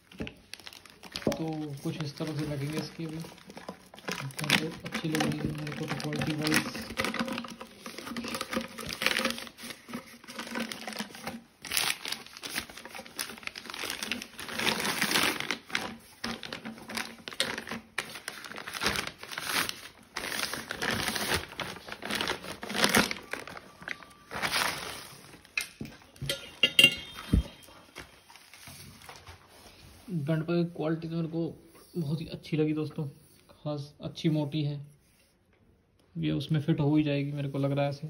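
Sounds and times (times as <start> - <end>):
packaging tearing: 0.0 - 25.6
packaging crinkling and rustling: 0.0 - 30.2.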